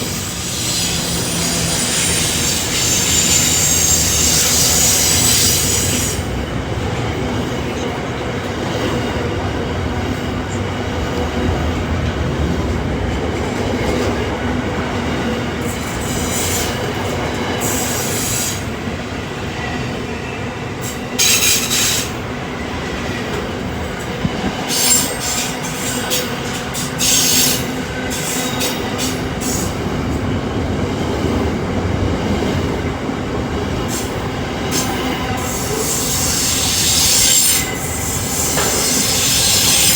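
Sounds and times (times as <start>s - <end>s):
train wheels rumbling on rails: 0.0s - 39.9s
high-pitched wheel squeal: 0.1s - 6.3s.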